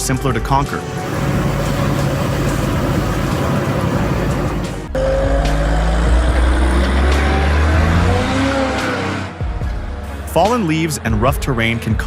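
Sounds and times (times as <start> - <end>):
heavy vehicle engine running: 0.8 - 5.1
deep engine rumble rising in pitch: 0.8 - 9.4.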